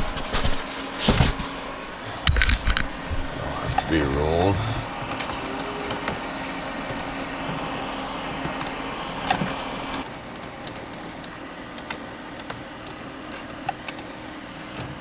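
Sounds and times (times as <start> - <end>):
machine hum: 0.0 - 14.8.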